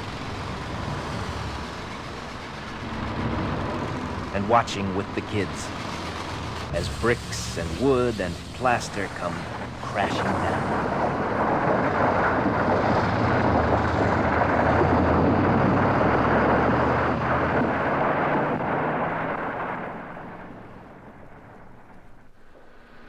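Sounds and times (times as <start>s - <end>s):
demolition debris crashing down: 10.0s - 16.8s.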